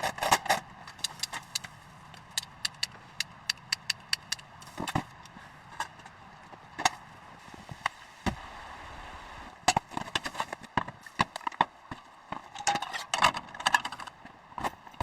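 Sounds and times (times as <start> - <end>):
sharp clicks and knocks: 0.0 - 5.1
dull thump: 8.2 - 8.5.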